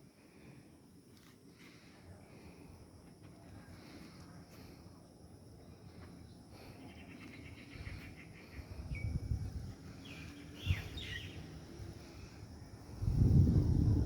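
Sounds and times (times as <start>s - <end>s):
small birds chirping: 5.6s - 12.4s.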